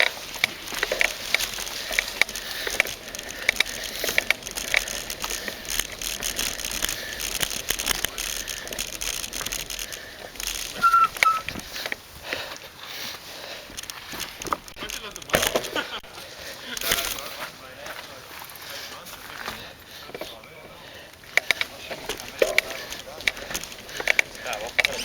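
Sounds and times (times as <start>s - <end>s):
small clicks and knocks: 0.0s - 12.4s, 13.6s - 16.1s, 21.2s - 25.0s
bike rattling: 0.0s - 25.0s
bike tyres on dirt: 0.0s - 25.0s
short high squeaks: 10.6s - 11.6s.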